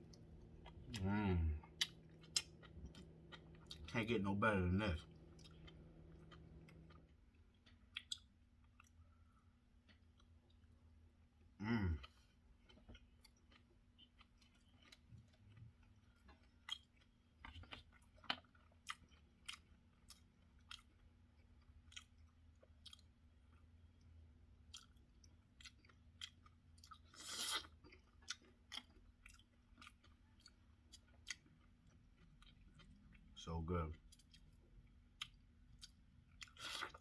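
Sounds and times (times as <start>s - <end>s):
close chewing: 0.1s - 4.0s, 12.6s - 23.6s, 24.6s - 33.2s.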